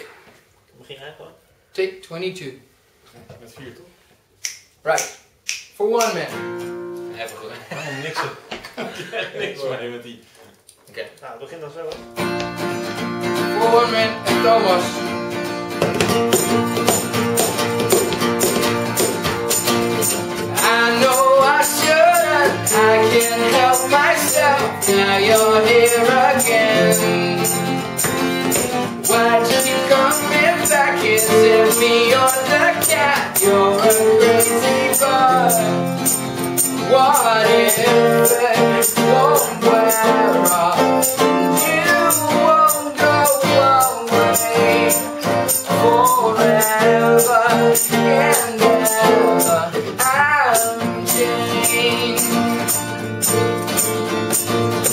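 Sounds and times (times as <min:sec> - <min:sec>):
guitar: 0:05.8 - 0:09.6, 0:10.4 - 0:54.9
person singing: 0:13.4 - 0:15.0, 0:20.4 - 0:52.8
tambourine beat: 0:15.6 - 0:54.9.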